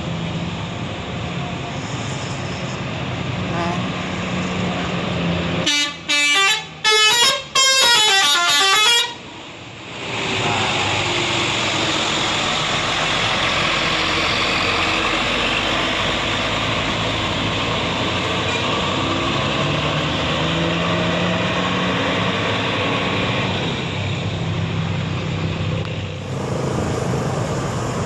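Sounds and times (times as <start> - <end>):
traffic engine and road noise: 0.0 - 28.0
multi-tone bus horn melody: 3.5 - 3.9, 5.6 - 9.2.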